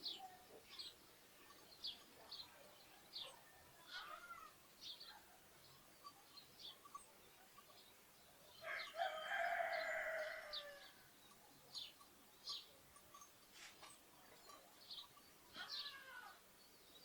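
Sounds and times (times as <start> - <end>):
sparrows chirping: 0.0 - 17.0
rooster crowing: 8.6 - 11.0.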